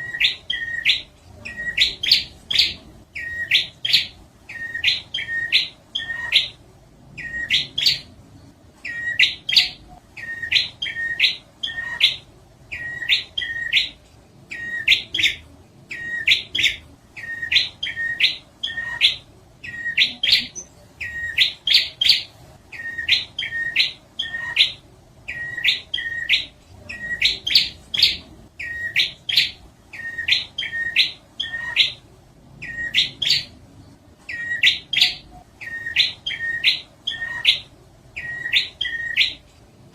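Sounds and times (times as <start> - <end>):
bird song with rising notes: 32.6 - 39.4.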